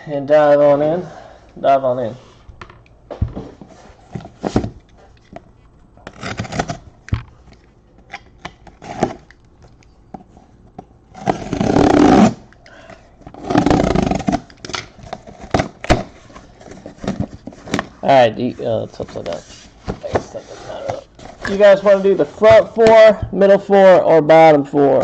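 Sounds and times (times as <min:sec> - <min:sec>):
plastic wrap and cardboard rustling: 0:13.5 - 0:23.1.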